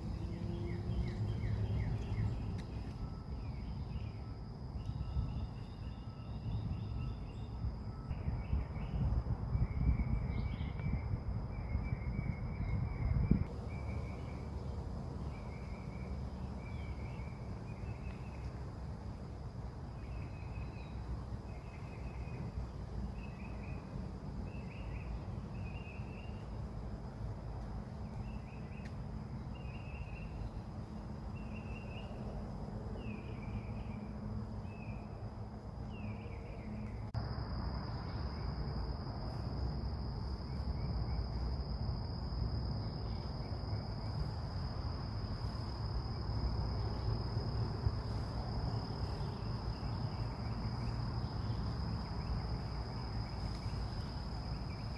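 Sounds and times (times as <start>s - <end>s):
insect trill: 0.0s - 54.9s.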